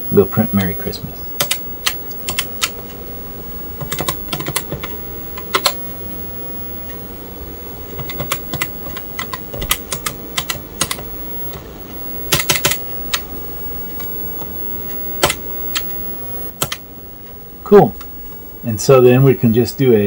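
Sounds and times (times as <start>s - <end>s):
keyboard keys clicking: 1.4s - 2.9s, 3.8s - 5.9s, 8.0s - 11.6s, 12.2s - 16.8s.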